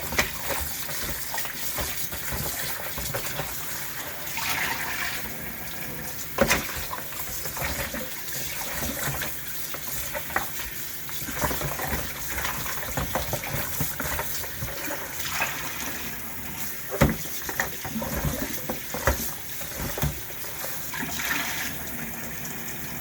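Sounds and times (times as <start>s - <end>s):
tap running into sink: 0.0s - 22.8s
knocks against sink: 17.0s - 18.4s.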